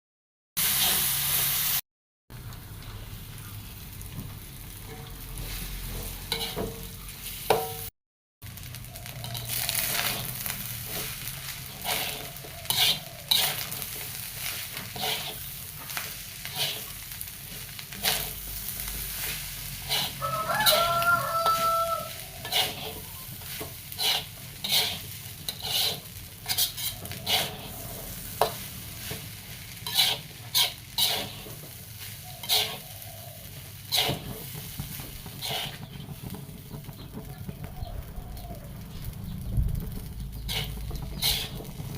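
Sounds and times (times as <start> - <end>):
rice sizzling in a pan: 0.6 - 1.8, 2.4 - 41.9
spatula scraping a pan: 4.9 - 7.8, 8.6 - 37.2, 39.9 - 41.9
rooster crowing: 20.1 - 22.4, 37.6 - 38.9.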